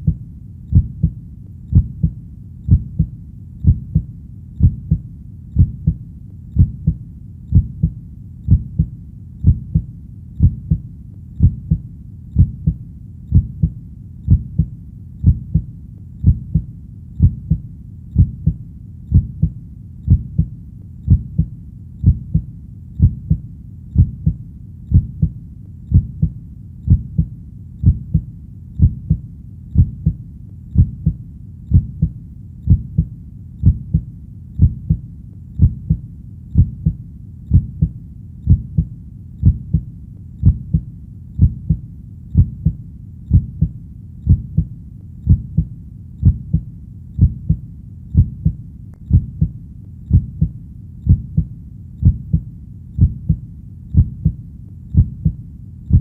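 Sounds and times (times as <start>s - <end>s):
heartbeat double thump: 0.0s - 5.0s, 5.6s - 6.0s, 6.6s - 10.8s, 11.4s - 11.8s, 12.4s - 17.6s, 18.2s - 20.5s, 21.1s - 23.4s, 24.0s - 29.2s, 30.8s - 35.0s, 35.6s - 36.0s, 36.6s - 40.8s, 41.4s - 41.8s, 42.4s - 43.7s, 44.3s - 44.7s, 45.3s - 47.6s, 48.2s - 50.5s, 51.1s - 52.4s, 53.0s - 53.4s, 54.0s - 54.4s, 55.0s - 56.0s
faint low rumble: 0.0s - 56.0s.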